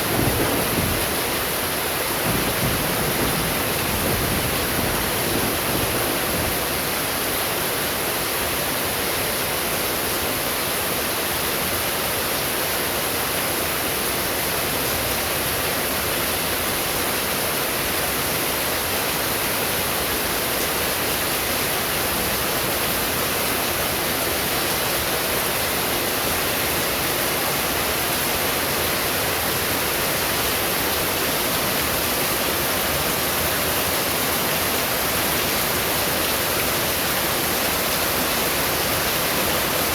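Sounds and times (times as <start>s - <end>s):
heavy rain hissing: 0.0s - 8.6s, 18.8s - 39.9s.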